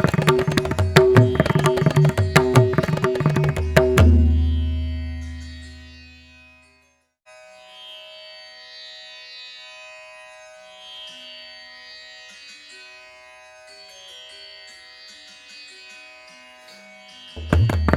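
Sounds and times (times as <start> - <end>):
plucked-string melody: 0.0 - 6.4, 17.4 - 17.9.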